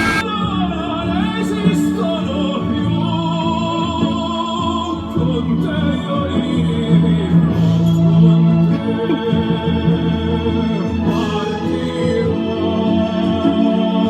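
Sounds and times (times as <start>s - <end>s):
person singing long held notes: 0.0s - 0.2s.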